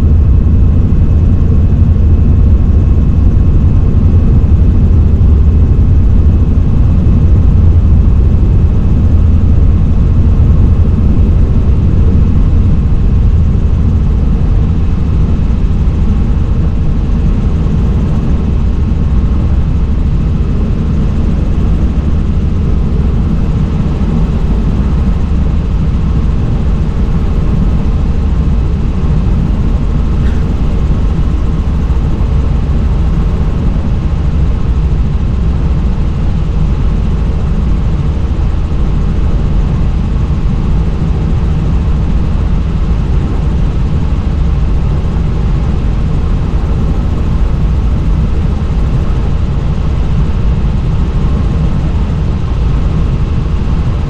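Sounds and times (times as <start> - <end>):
helicopter engine and rotor: 0.0 - 54.0.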